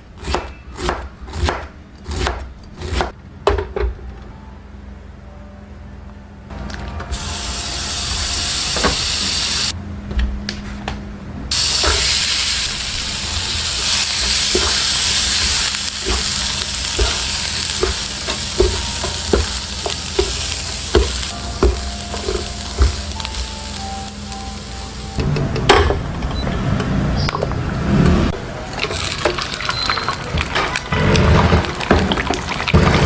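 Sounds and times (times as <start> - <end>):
food sizzling in oil: 7.1 - 9.7, 11.5 - 25.2.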